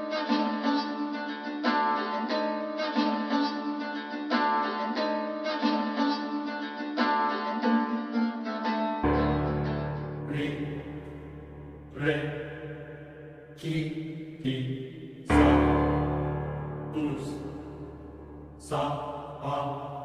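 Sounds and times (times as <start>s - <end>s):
plucked-string melody: 0.0s - 12.9s, 15.3s - 18.6s
low bass: 9.1s - 13.0s.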